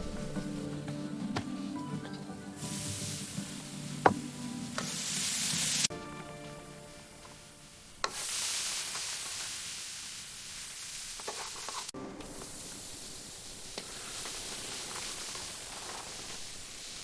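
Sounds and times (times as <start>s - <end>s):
food sizzling in hot oil: 2.6s - 5.9s, 6.8s - 17.0s.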